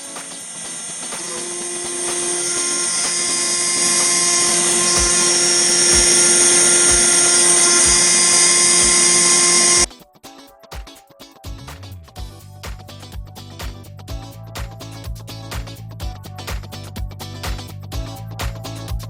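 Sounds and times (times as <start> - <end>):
metal cutting hiss: 0.0 - 9.9
router spindle whining: 0.0 - 9.9.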